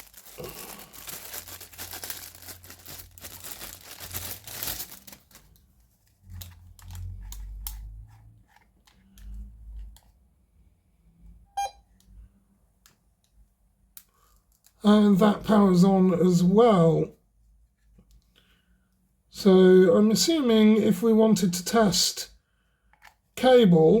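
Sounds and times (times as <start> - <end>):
plastic packaging crinkling: 0.0 - 7.8
short electronic beep: 11.5 - 11.8.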